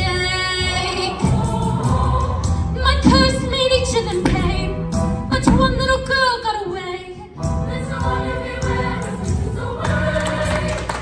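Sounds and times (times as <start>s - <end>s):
backing music: 0.0s - 11.0s
choir singing: 0.1s - 2.6s, 7.4s - 11.0s.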